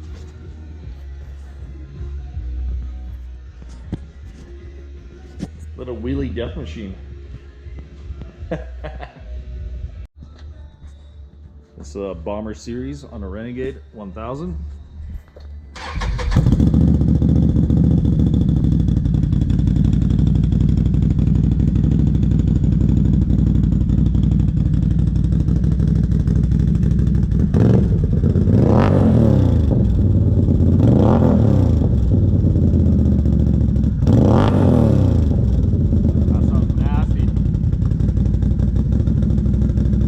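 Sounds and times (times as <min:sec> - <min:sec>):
quad engine idling and revving: 0:15.9 - 0:40.0.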